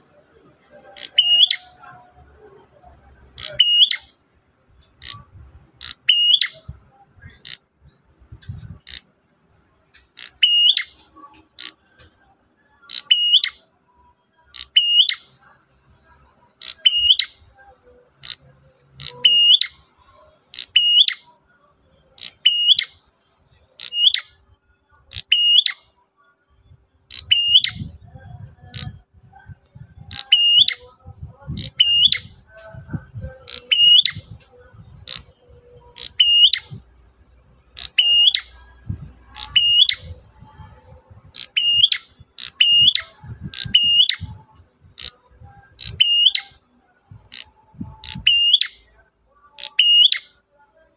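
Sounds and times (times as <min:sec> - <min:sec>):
bird chirping: 0:00.0 - 0:04.2, 0:04.8 - 0:09.1, 0:09.9 - 0:13.8, 0:14.4 - 0:15.5, 0:16.2 - 0:23.0, 0:23.6 - 0:26.0, 0:26.6 - 0:50.4
low rumble: 0:38.5 - 0:39.4.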